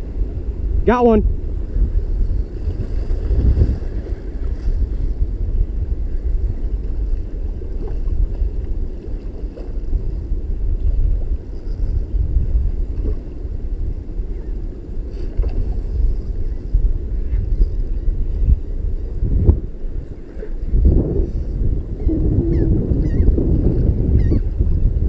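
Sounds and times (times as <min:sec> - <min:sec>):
wind buffeting microphone: 0:00.0 - 0:25.0.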